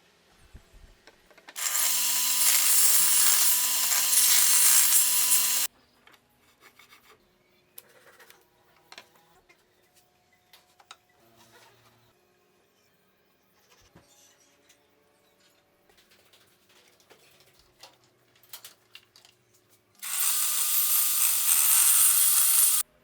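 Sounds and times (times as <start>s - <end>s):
saw cutting through wood: 1.6s - 5.7s, 20.0s - 22.9s.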